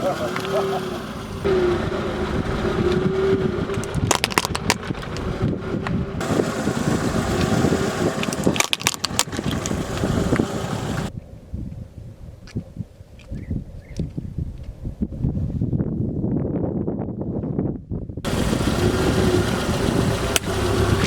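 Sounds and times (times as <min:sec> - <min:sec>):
car engine running: 0:00.0 - 0:11.1, 0:18.2 - 0:21.0
tyres crushing toys: 0:08.2 - 0:09.7.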